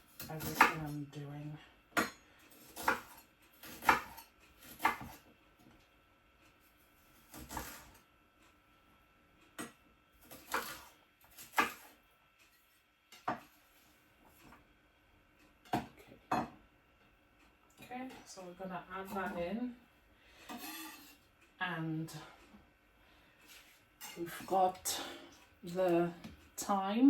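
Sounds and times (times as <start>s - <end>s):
knife chopping on a board: 0.1s - 0.9s, 2.0s - 5.2s, 7.2s - 8.0s, 9.6s - 11.9s, 13.2s - 13.6s, 15.7s - 16.6s.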